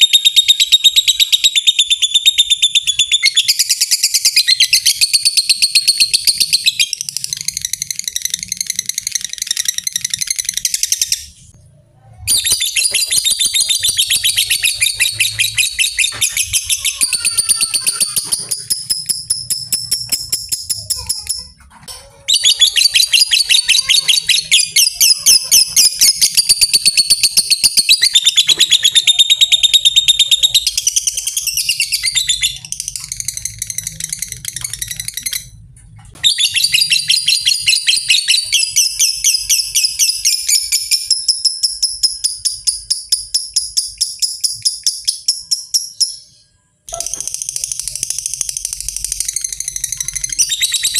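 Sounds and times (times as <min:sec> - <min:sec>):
lovebird chattering trill: 0:12.3 - 0:35.6.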